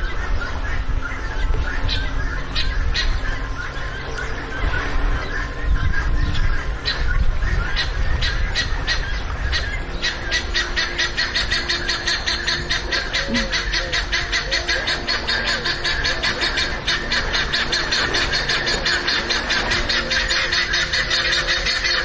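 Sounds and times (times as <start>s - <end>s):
hippopotamus grunting and honking: 8.9s - 22.0s.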